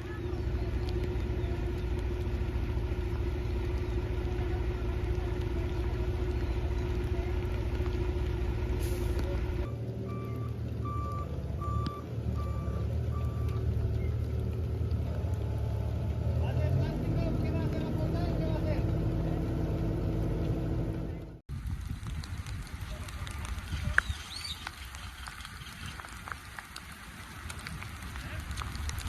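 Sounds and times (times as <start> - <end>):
heavy vehicle engine rumbling: 0.0 - 24.0.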